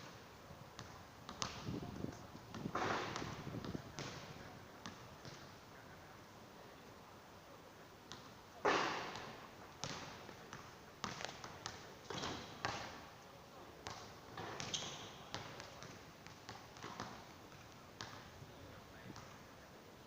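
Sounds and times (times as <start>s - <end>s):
basketball bouncing: 0.8s - 1.7s, 2.5s - 5.4s, 8.7s - 12.9s, 13.8s - 18.2s.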